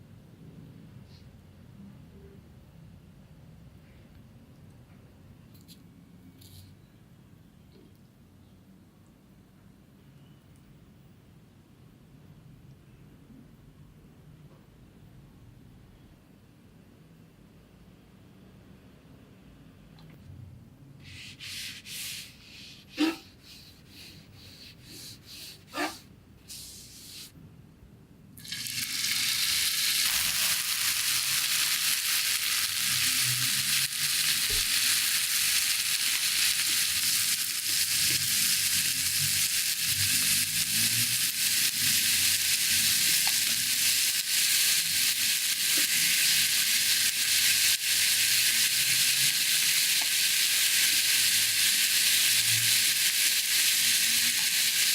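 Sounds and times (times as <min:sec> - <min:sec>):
food sizzling on hot plate: 0:28.4 - 0:54.9.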